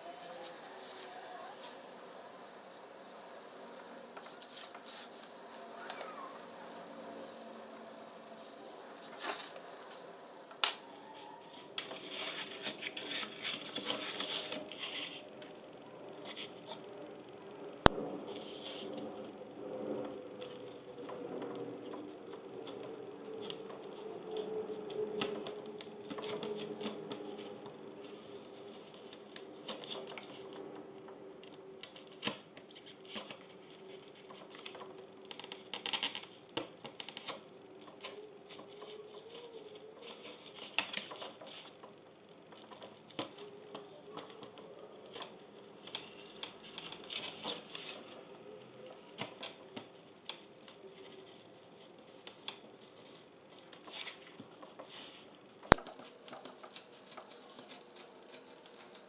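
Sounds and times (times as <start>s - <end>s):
faint steady drone: 0.0s - 59.0s.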